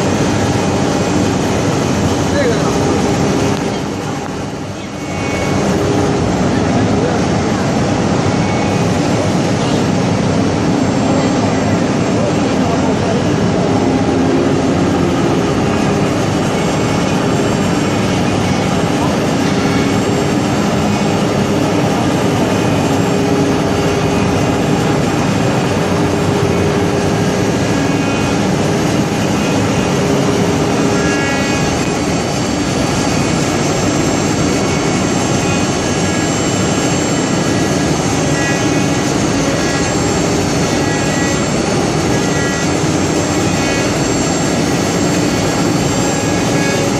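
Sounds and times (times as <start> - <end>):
high spindle whine: 0.0 - 46.9
router cutting wood: 15.6 - 46.9.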